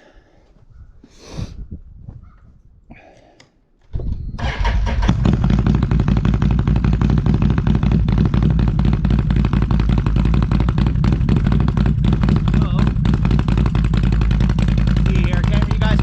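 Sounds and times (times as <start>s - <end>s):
atv engine idling: 4.4s - 16.0s.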